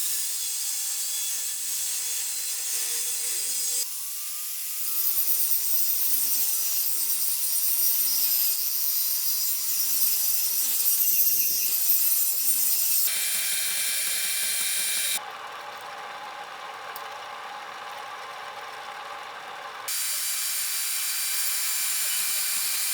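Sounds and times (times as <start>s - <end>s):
power tool motor running: 3.0s - 16.1s, 17.8s - 22.9s.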